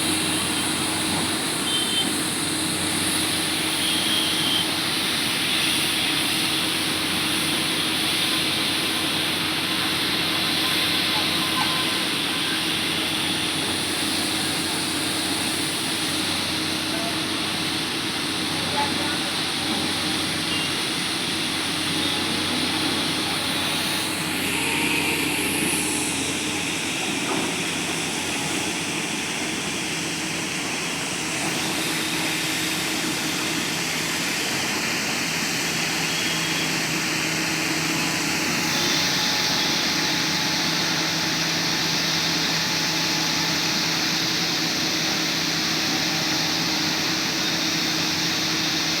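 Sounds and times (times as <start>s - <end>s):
diesel engine humming: 0.0s - 49.0s.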